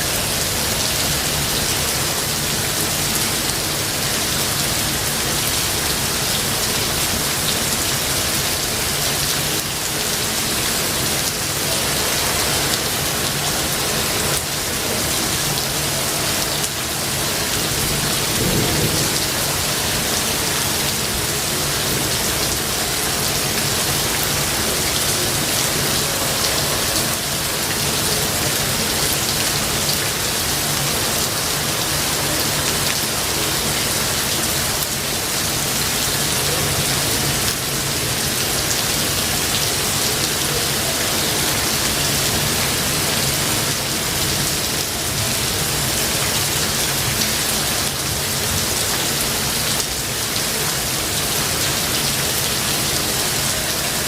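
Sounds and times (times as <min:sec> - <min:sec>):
heavy rain: 0:00.0 - 0:54.0
thunder rumbling: 0:17.7 - 0:21.2.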